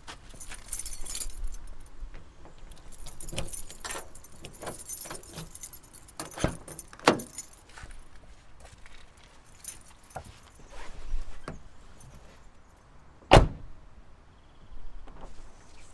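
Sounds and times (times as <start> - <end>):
keys jangling: 0.2 - 2.0, 2.7 - 8.2, 8.8 - 10.7.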